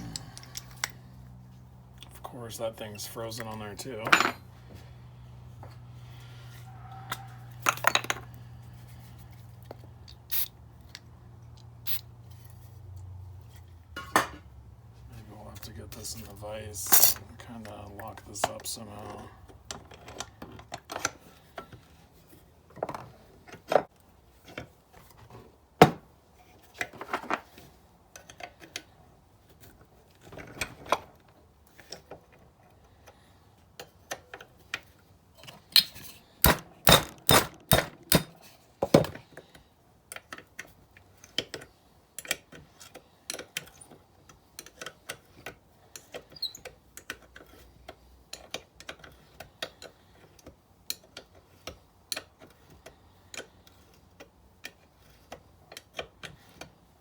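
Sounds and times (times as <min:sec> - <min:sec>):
metal tools tapping on steel: 0:04.0 - 0:04.4.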